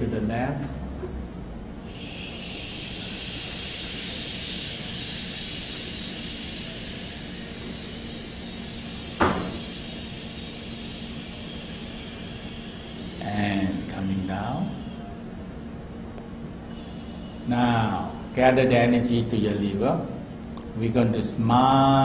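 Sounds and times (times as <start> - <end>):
long soft exhaled shh: 1.8 - 14.0
sharp knock: 9.2 - 9.6.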